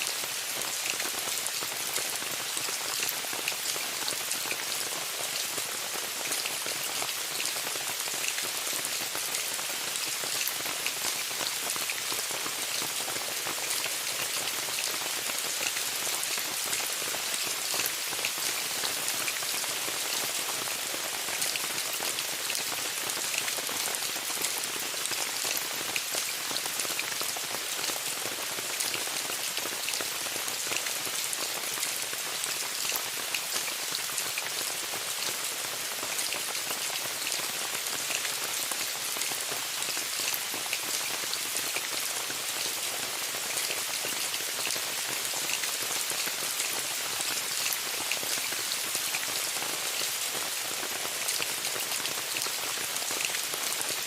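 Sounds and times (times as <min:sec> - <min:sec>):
rain falling on a tent: 0:00.0 - 0:54.0.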